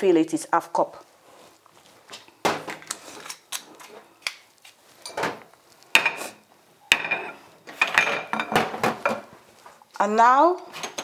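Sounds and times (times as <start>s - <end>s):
kitchen utensils knocking and clattering: 5.0s - 5.4s, 6.9s - 9.3s, 10.7s - 11.0s.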